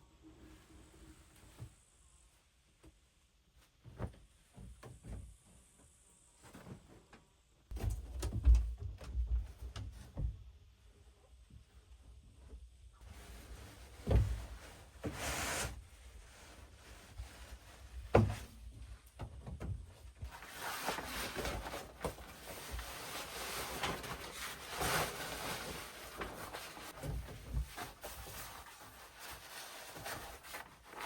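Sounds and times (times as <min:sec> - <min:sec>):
rustling and scraping: 0:12.4 - 0:31.0.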